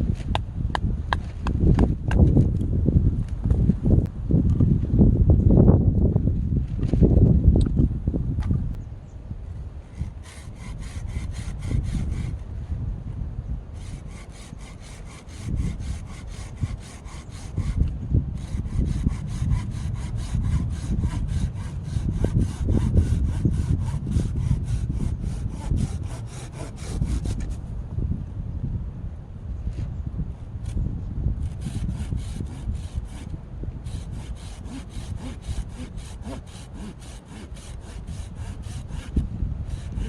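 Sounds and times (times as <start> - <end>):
hand saw cutting wood: 9.9 - 12.4, 13.8 - 27.6, 31.4 - 40.0.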